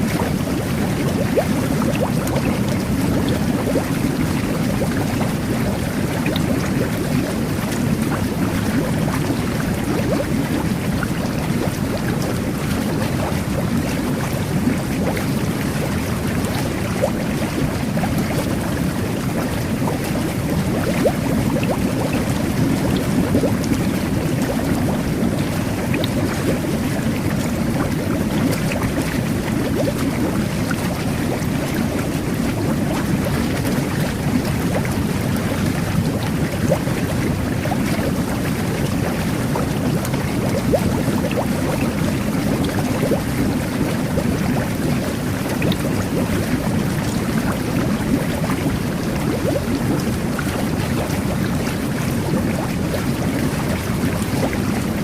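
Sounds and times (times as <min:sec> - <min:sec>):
jet bath water bubbling: 0:00.0 - 0:55.0.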